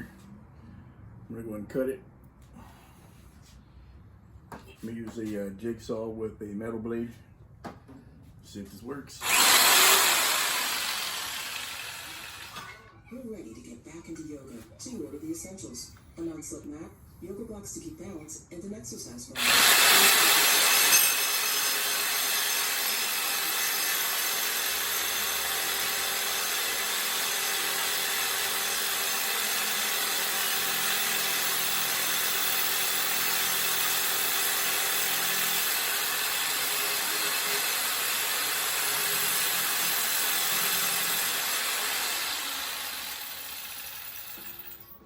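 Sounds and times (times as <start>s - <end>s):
jigsaw cutting metal: 9.2s - 12.8s, 19.4s - 45.0s.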